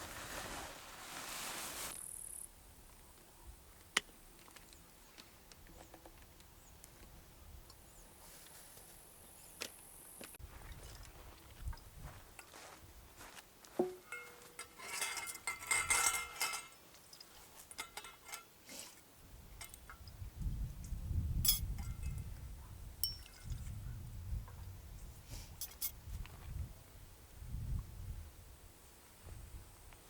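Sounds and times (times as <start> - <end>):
small objects clinking: 13.8 - 18.5, 23.0 - 23.6, 25.6 - 25.9.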